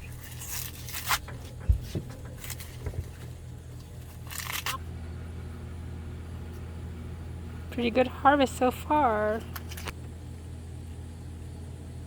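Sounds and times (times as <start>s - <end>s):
corn husks tearing: 0.0s - 4.9s
steady low hum: 0.0s - 12.0s
dull thump: 1.2s - 3.3s.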